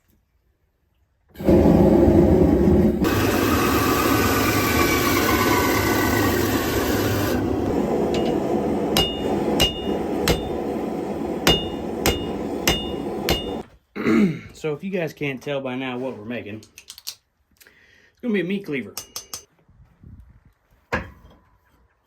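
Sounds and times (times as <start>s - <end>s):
hammer striking steel on anvil: 8.1s - 10.8s, 11.4s - 13.6s, 19.0s - 19.5s.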